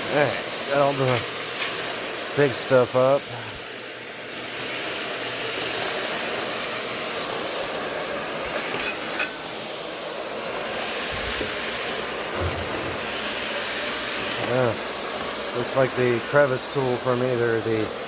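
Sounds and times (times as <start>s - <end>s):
upright vacuum cleaner running: 0.0s - 18.0s.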